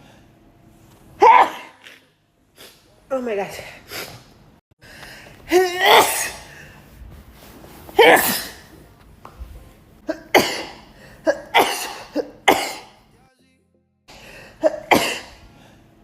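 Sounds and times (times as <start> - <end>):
woman sneezing: 1.2 - 2.9, 5.5 - 6.6, 8.0 - 8.7, 10.0 - 13.0, 14.6 - 15.4.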